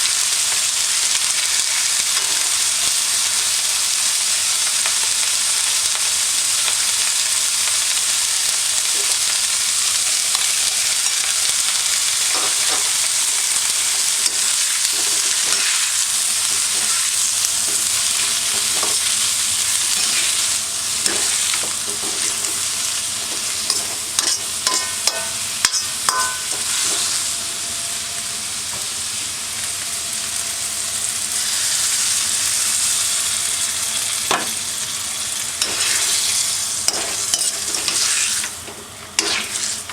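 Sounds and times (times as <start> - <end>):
food sizzling in a wok: 0.0 - 39.9
metal utensil scraping a pan: 23.4 - 27.1, 35.6 - 38.5.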